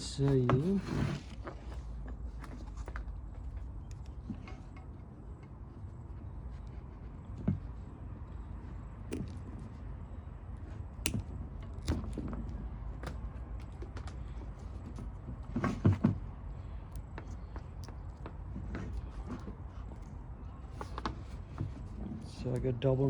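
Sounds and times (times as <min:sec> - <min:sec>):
low background rumble: 0:00.0 - 0:23.0
light clicks and taps: 0:10.6 - 0:22.7.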